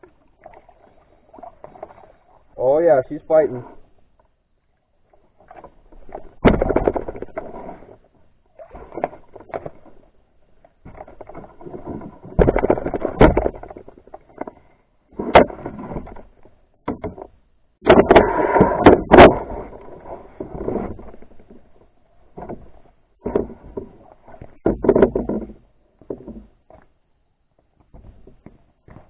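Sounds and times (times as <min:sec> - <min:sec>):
water splashing: 0:00.0 - 0:17.2
knocks against canoe hull: 0:06.4 - 0:07.6, 0:10.9 - 0:13.9, 0:15.2 - 0:19.7, 0:22.4 - 0:26.6.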